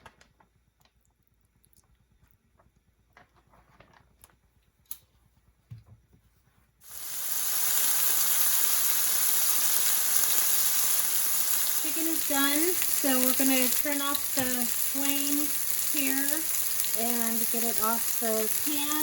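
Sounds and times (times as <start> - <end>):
chicken sizzling in a pan: 6.8 - 19.0.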